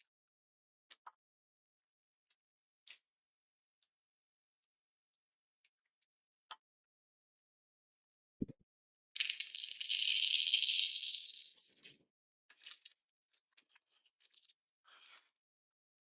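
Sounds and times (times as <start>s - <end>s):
metal nuts rattling in container: 9.2s - 12.0s.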